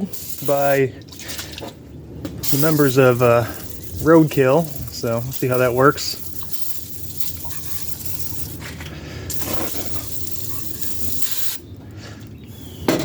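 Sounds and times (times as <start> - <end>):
spray can spraying: 0.0 - 1.5, 2.4 - 11.6.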